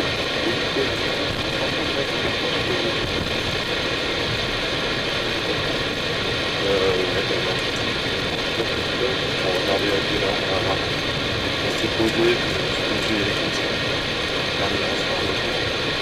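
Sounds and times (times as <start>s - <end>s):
mechanical hum of engines and airflow: 0.0s - 16.0s.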